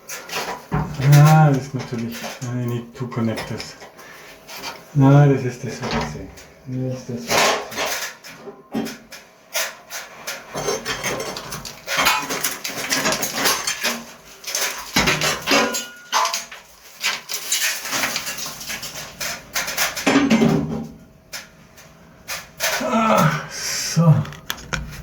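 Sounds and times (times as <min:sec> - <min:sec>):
knocks and clatter on pipe: 0:10.5 - 0:16.5, 0:17.9 - 0:20.9.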